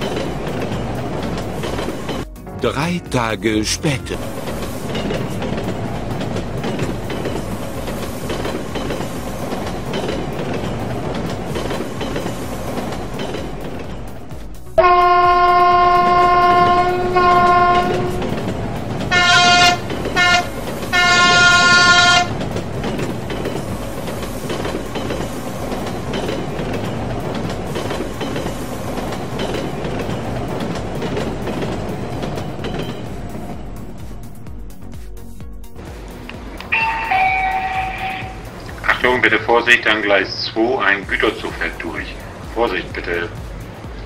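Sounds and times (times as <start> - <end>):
train rumbling on rails: 0.0 - 44.0
train horn blasts: 14.8 - 18.3, 19.1 - 22.4, 36.6 - 38.5.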